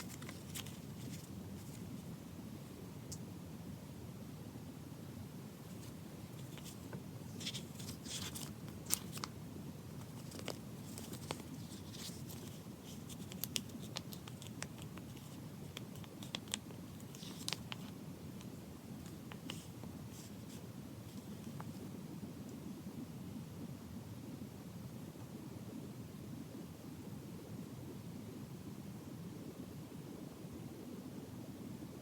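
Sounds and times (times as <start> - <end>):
paper rustling: 0.0 - 2.1, 5.7 - 21.7
low room hum: 0.0 - 32.0.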